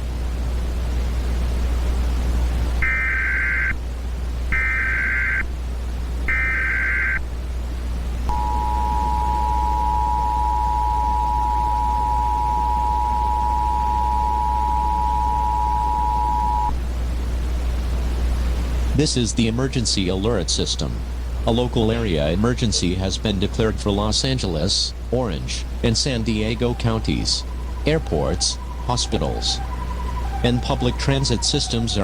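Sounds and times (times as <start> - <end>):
low hum and hiss: 0.0 - 32.0
screeching digital data tones: 6.3 - 7.2, 25.8 - 32.0
two-tone attention signal: 8.3 - 16.7, 26.2 - 32.0.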